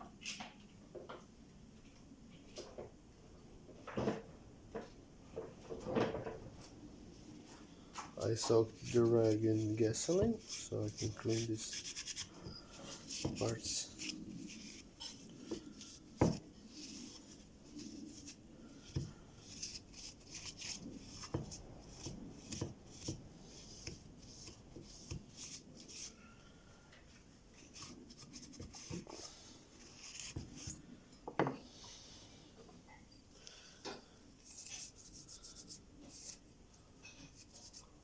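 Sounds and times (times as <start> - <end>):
rag rubbing engine parts: 8.2 - 18.9.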